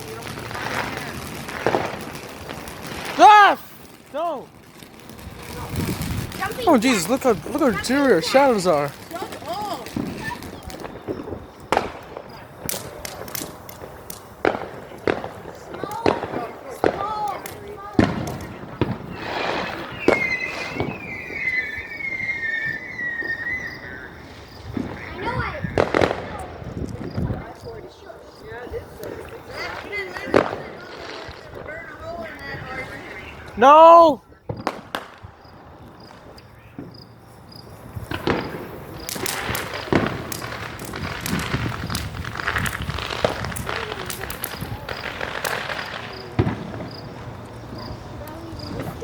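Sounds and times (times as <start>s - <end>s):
fireworks popping with hiss: 0.0s - 49.0s
high falling firework whistle: 18.8s - 26.2s.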